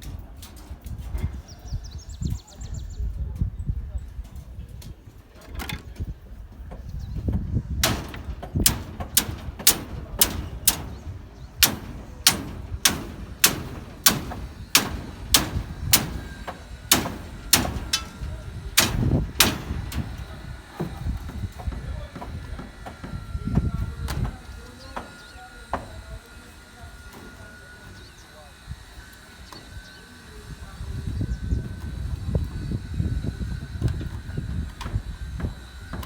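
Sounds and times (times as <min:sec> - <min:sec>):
hammer blows: 0:07.8 - 0:23.3.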